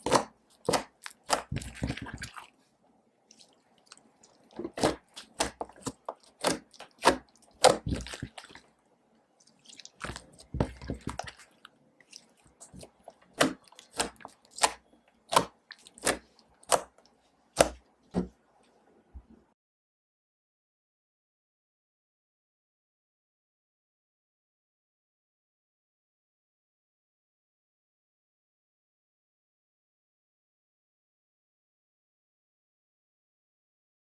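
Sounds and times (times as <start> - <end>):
slime clicking and popping: 4.6 - 8.5, 12.7 - 17.0.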